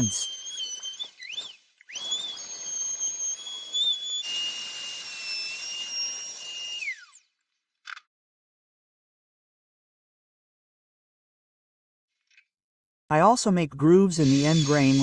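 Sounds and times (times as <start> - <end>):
electric router cutting wood: 0.0 - 7.2, 14.2 - 15.0.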